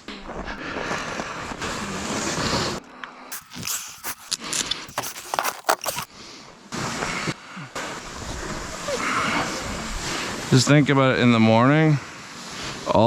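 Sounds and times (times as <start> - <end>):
short sharp clicks and scrapes: 3.3 - 6.1.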